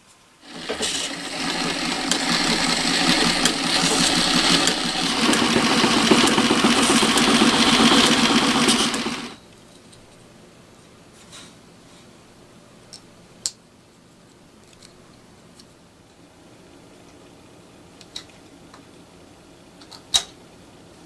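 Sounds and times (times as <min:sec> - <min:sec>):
sewing machine clattering: 0:00.4 - 0:09.4.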